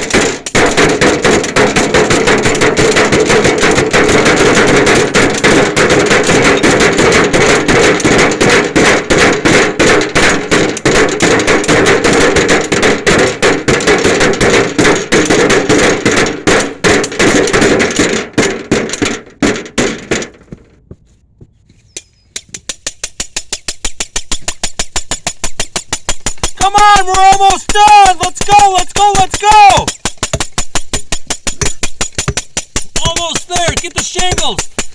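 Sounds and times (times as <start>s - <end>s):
rapid dense hammering: 0.0s - 21.2s, 22.3s - 34.9s
quick even taps: 20.9s - 34.9s.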